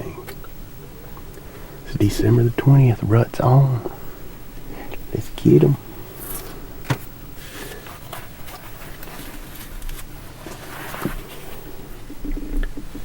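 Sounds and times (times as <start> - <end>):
faint rustling: 3.8 - 13.0.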